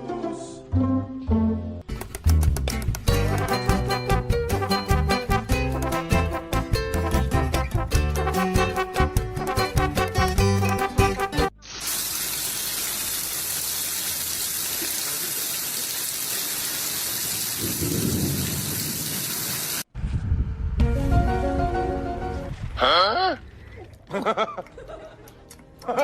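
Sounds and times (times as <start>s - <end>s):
music: 0.0s - 11.6s, 20.8s - 22.6s, 24.9s - 26.0s.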